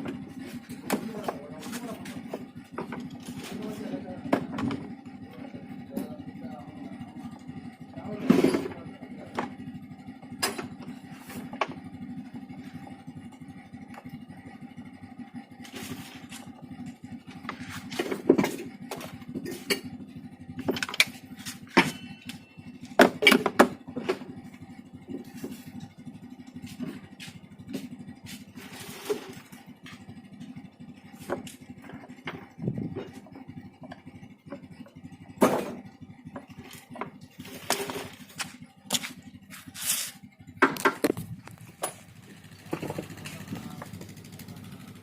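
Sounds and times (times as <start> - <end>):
pressure washer motor humming: 36.5 - 45.0
sharp clicks and knocks: 40.6 - 44.0.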